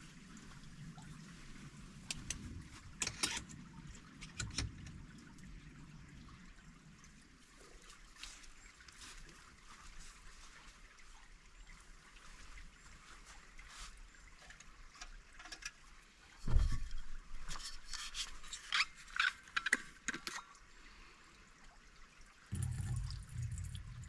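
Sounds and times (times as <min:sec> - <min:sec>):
stream trickling: 0:00.0 - 0:24.0
clicks and taps of gear: 0:03.0 - 0:03.6, 0:04.2 - 0:05.0
low rumble: 0:22.5 - 0:24.0.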